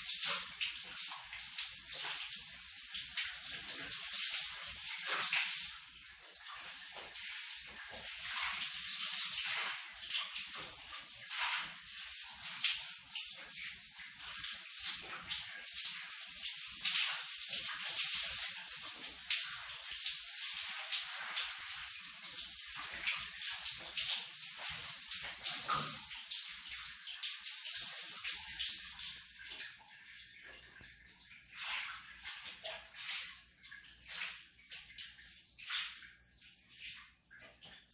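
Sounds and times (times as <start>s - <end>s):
shower water spraying: 0.0s - 29.4s.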